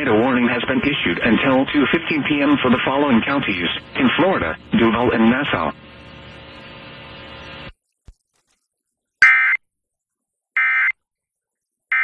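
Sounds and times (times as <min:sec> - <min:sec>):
faint steady hum: 0:00.0 - 0:12.0
harsh digital tone bursts: 0:09.2 - 0:09.6.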